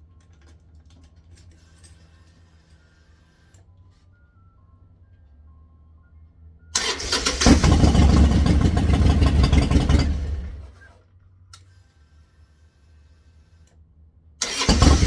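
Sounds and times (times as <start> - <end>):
electric starter cranking: 6.8 - 10.7, 14.4 - 15.0
motorcycle engine running: 7.4 - 10.7.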